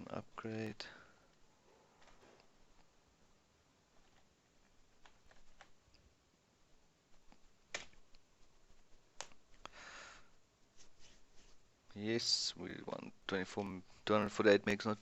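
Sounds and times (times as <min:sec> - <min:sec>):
computer keyboard keystrokes: 0:05.0 - 0:05.8.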